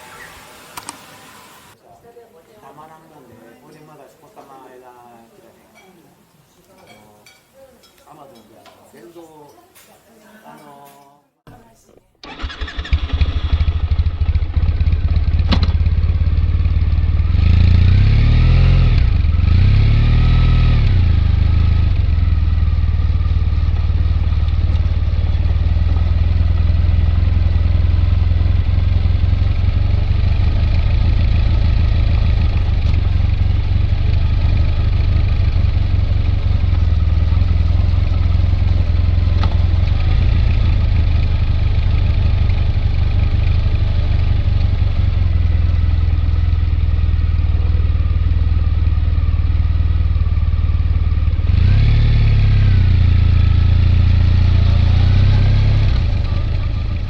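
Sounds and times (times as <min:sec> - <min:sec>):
motorcycle engine idling and blipped: 0:00.0 - 0:01.8, 0:12.2 - 0:57.0.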